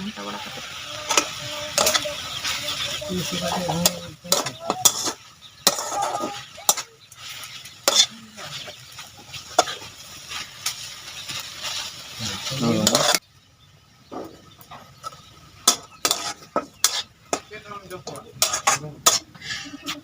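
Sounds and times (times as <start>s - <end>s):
steady hiss: 0.0s - 13.2s
metal spoon scraping a pot: 0.5s - 10.5s, 15.6s - 20.0s.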